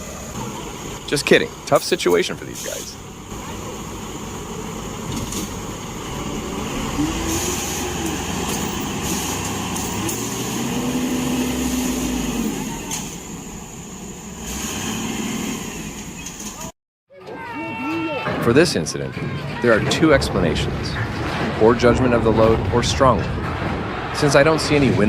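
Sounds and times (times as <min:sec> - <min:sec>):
heavy machine engine revving: 0:02.5 - 0:16.7.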